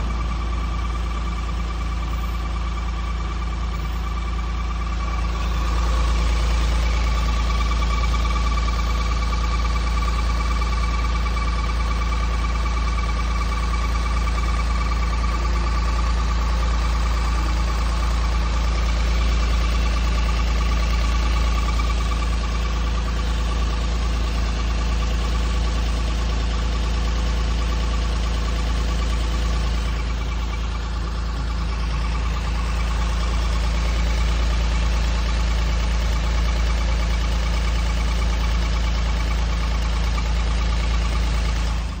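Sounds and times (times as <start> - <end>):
engine whine: 0.0 - 11.5, 27.2 - 42.0
engine rumble: 0.0 - 42.0.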